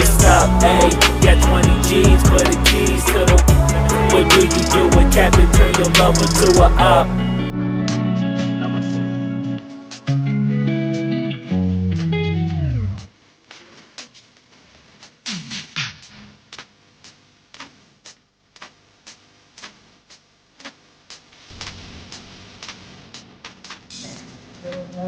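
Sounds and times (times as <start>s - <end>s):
guitar background music: 0.0s - 13.1s.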